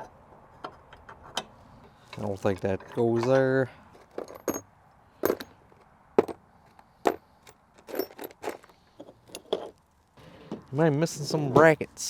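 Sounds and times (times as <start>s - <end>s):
metal parts clinking: 2.1s - 9.8s.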